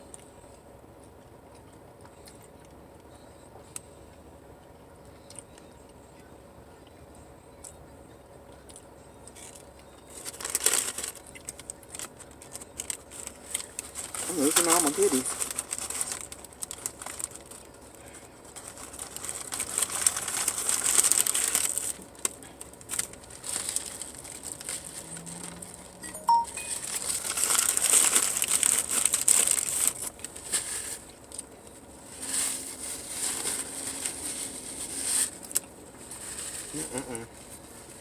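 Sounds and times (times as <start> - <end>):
food wrapper crinkling: 9.4 - 25.9, 26.8 - 37.1.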